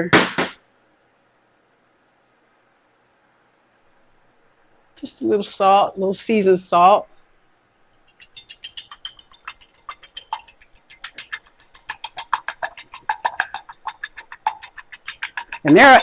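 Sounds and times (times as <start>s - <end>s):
eggs whisked in a bowl: 4.9s - 16.0s.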